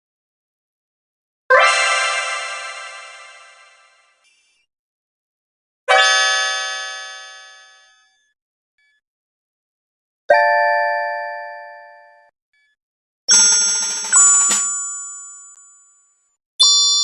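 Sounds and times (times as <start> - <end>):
bell-like ding: 13.3 - 16.0.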